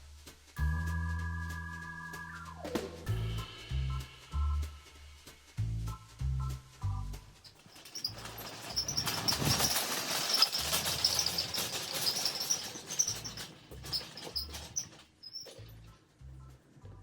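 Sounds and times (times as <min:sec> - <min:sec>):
low bass notes: 0:00.0 - 0:07.4.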